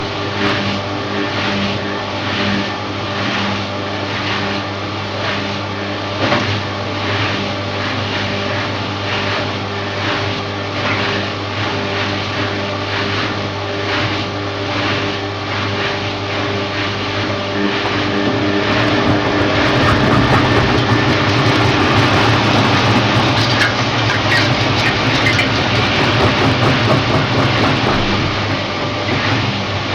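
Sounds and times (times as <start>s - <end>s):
washing machine motor hum: 17.9s - 29.6s
washing machine drum turning: 18.7s - 29.6s.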